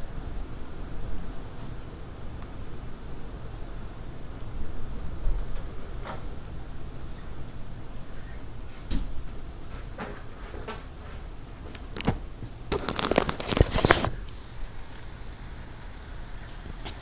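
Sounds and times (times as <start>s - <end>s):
sharp crackles and clicks: 11.6s - 17.0s.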